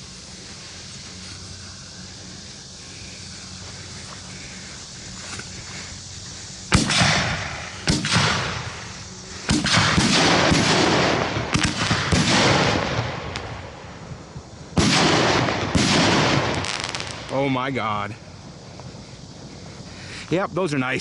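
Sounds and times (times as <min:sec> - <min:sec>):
firework shells bursting: 0:06.7 - 0:13.6, 0:14.3 - 0:17.6.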